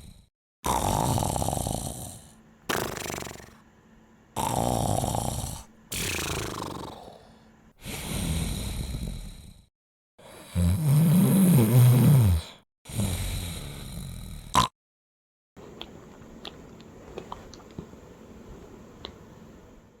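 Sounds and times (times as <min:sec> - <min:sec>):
dog snoring: 0:00.0 - 0:03.6, 0:04.4 - 0:14.7.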